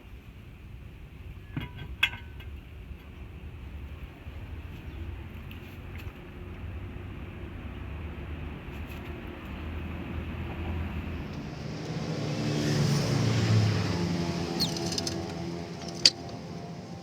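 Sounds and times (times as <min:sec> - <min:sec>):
vehicle engine passing by: 0:06.4 - 0:17.0.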